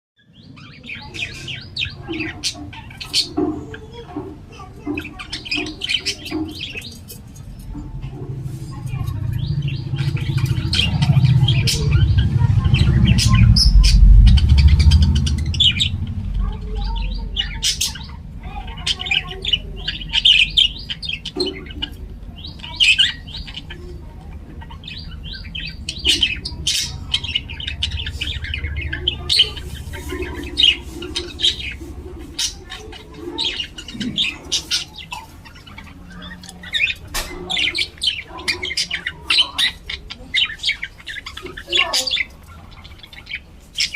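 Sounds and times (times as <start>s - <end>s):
budgerigars chirping and chattering: 0.2s - 43.9s
low rumble: 7.1s - 22.5s, 23.2s - 32.2s.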